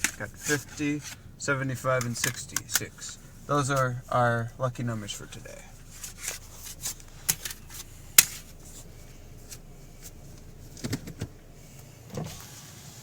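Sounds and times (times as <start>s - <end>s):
low steady hum: 0.0s - 13.0s
clicks and rustles: 6.0s - 8.9s.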